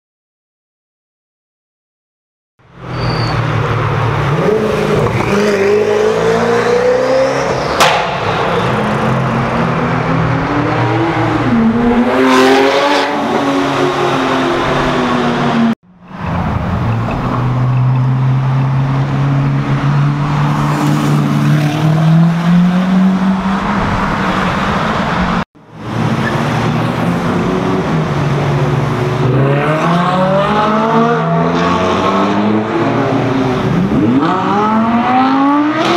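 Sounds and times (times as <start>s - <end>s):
car engines revving: 2.7s - 35.9s
sharp crack: 7.8s - 8.6s.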